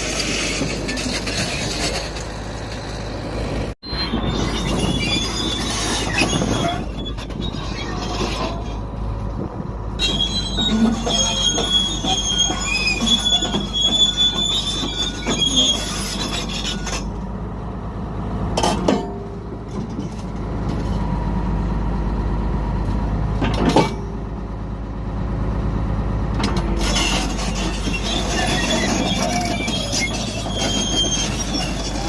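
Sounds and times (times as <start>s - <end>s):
crawler track squealing: 0.0s - 17.2s, 26.4s - 32.0s
low diesel rumble: 0.0s - 32.0s.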